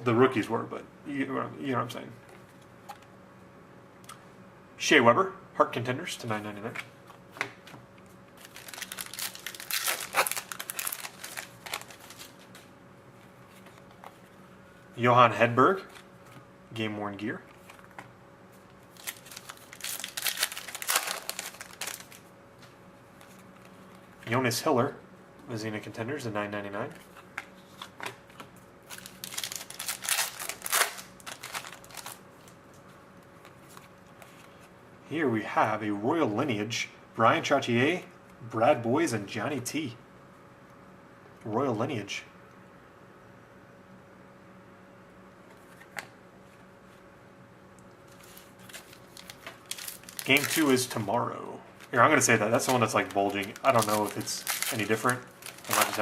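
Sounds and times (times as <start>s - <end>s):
wrapper crinkling and tearing: 8.4s - 12.5s, 18.9s - 22.2s, 28.9s - 32.5s, 48.1s - 51.1s, 51.8s - 56.0s.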